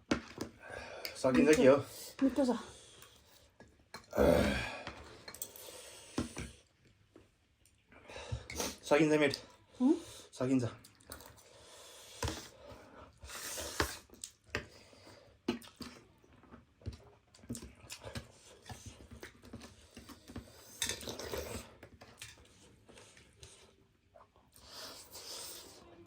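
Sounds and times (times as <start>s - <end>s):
slurping noodles: 11.3s - 14.3s
chewing: 15.4s - 25.8s.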